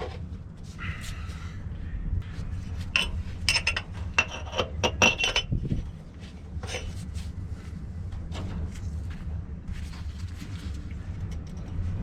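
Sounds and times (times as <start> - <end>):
low hum: 0.0 - 12.0
metal parts clinking and scraping: 2.8 - 5.6.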